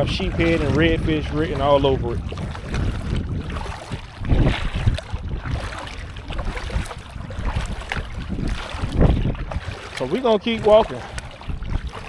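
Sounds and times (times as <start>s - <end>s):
legs wading through water: 0.0s - 12.0s
wind buffeting microphone: 0.0s - 12.0s.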